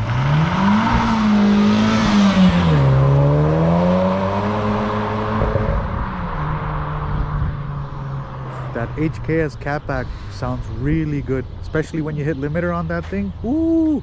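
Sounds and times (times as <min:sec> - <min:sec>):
car engine accelerating hard: 0:00.0 - 0:11.0.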